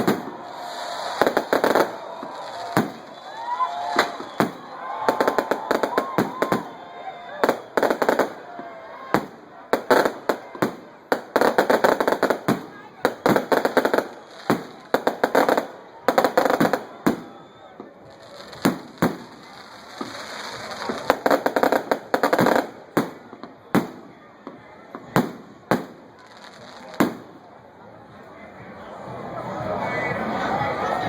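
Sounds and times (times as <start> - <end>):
firework hissing: 0.0 - 6.7, 18.1 - 22.8
firecrackers banging: 0.0 - 6.8, 7.4 - 24.1.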